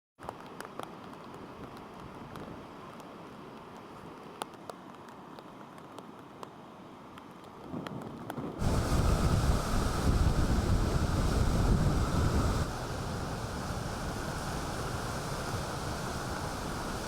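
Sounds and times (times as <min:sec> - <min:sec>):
ocean surf washing onto beach: 0:07.1 - 0:17.0
wind rumbling on microphone: 0:07.6 - 0:17.0.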